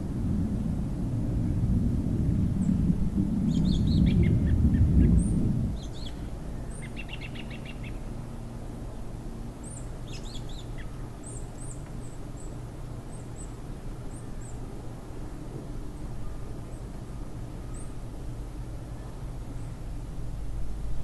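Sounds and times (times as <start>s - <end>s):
steady low hum: 0.0s - 21.0s
small birds chirping: 3.5s - 8.1s, 9.6s - 14.6s.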